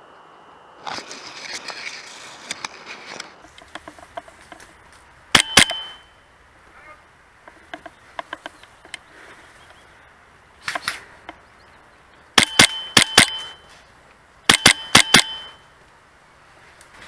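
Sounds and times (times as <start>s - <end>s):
airsoft rifle shots: 5.3s - 6.0s, 12.4s - 13.6s, 14.4s - 15.6s.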